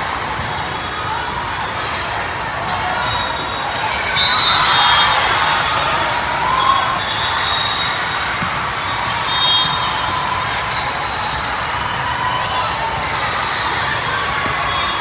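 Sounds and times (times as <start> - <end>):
balls bouncing on court floor: 8.2 - 10.5.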